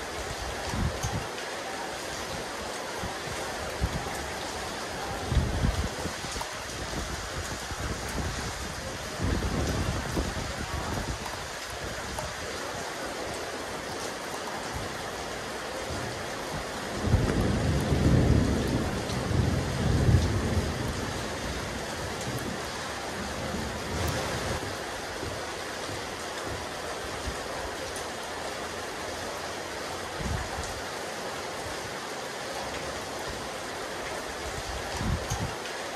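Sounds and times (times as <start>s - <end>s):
rain falling on roof: 0.0s - 35.9s.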